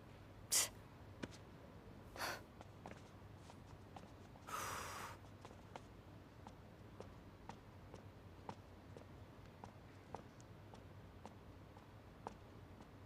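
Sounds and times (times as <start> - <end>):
faint breathing: 4.5 - 5.2.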